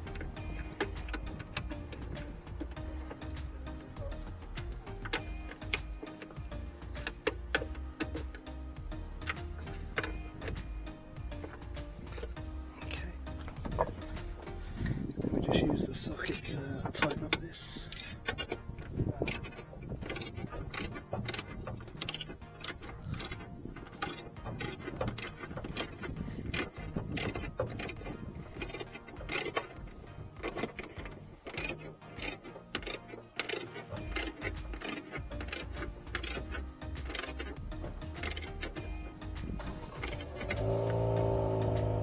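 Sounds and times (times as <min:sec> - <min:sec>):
ratchet wrench clicking: 0:16.2 - 0:16.6, 0:17.8 - 0:18.3, 0:19.2 - 0:29.7, 0:30.6 - 0:38.8, 0:40.0 - 0:41.1.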